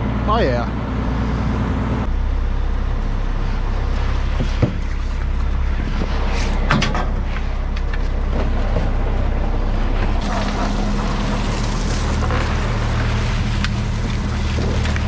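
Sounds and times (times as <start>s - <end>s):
boat engine running: 1.7s - 15.0s.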